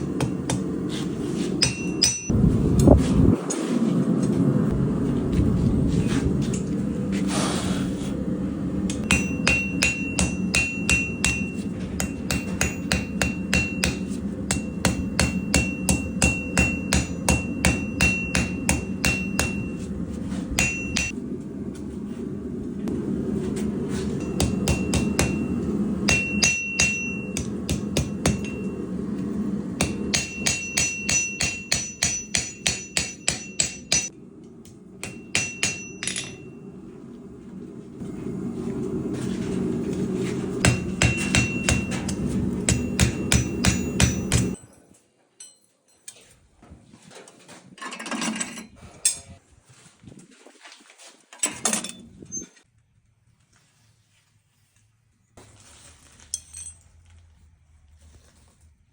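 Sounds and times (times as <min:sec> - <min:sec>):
hammer striking steel on anvil: 0:00.0 - 0:00.8, 0:01.6 - 0:02.4, 0:08.9 - 0:19.9, 0:20.5 - 0:21.2, 0:24.0 - 0:29.0, 0:29.8 - 0:34.2, 0:35.0 - 0:36.7, 0:40.6 - 0:44.7
steady low roar: 0:02.3 - 0:09.1.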